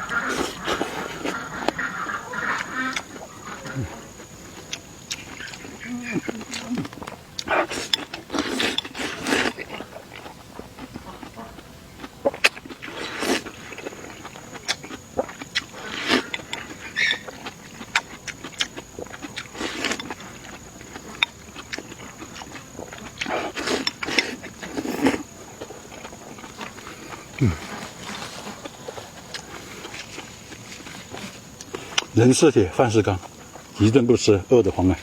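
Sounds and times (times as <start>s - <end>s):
high-pitched insect drone: 0.0s - 7.1s
person chewing and slurping: 0.0s - 32.2s.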